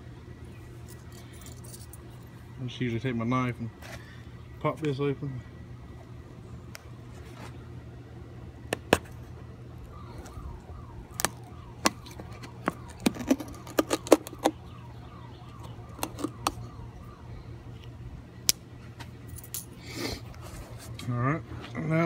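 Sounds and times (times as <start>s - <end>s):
plastic jug clicking and snapping: 11.2s - 14.6s.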